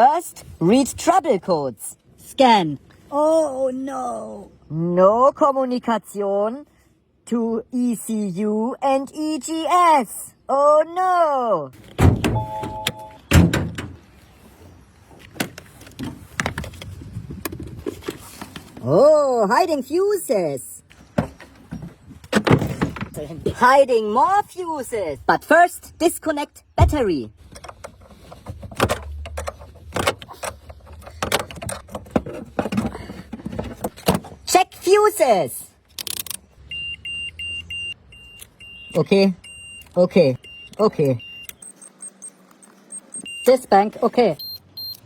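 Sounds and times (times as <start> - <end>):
electronic beep: 12.4 - 13.2, 36.7 - 43.8, 44.4 - 45.0
tools and car parts clattering: 21.0 - 23.3, 27.4 - 34.4.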